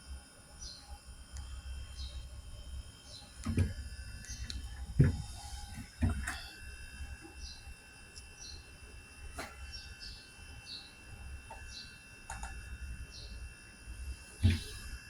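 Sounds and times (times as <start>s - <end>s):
faint bird chirps: 9.5s - 12.5s.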